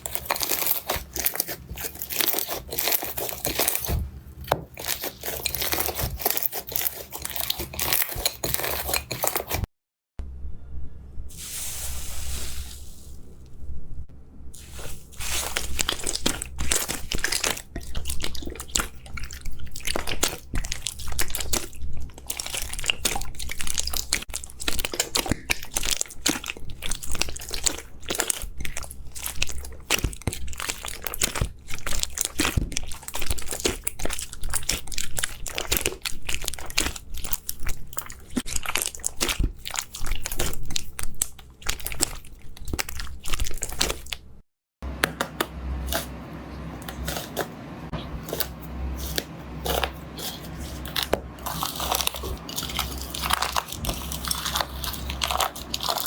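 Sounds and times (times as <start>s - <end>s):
slime crackling and popping: 50.8s - 56.0s.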